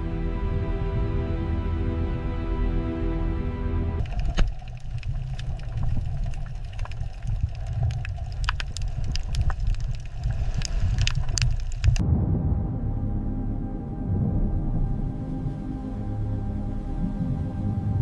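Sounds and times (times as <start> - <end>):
music: 0.0 - 4.0, 12.0 - 18.0
underwater low rumble: 0.0 - 18.0
underwater clicks and crackles: 4.0 - 12.0.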